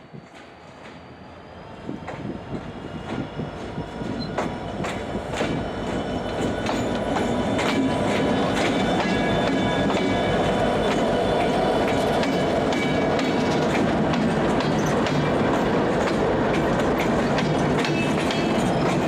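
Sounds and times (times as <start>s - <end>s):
freight train rumbling past: 0.0s - 19.0s
faint high wheel squeals: 5.5s - 11.8s
wheels clicking over rail joints: 11.8s - 19.0s.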